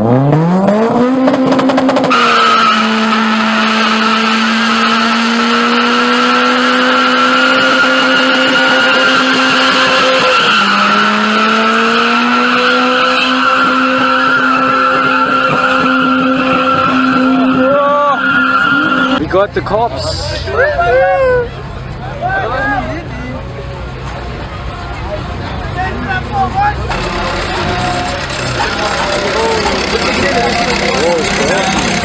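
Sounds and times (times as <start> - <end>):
car engine at high revs: 0.0 - 32.0
tyres spinning and squealing: 1.3 - 32.0.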